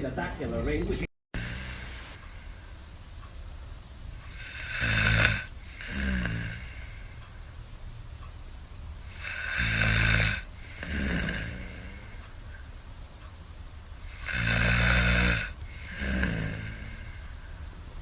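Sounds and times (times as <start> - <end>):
person snoring: 0.4 - 2.2, 4.2 - 7.1, 9.0 - 12.2, 14.0 - 17.3.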